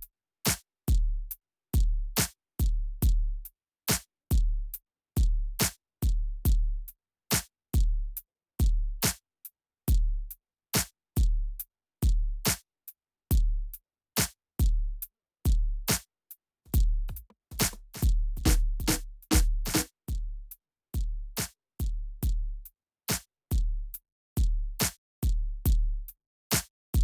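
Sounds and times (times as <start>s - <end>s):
electronic drum machine beat: 17.1s - 19.9s.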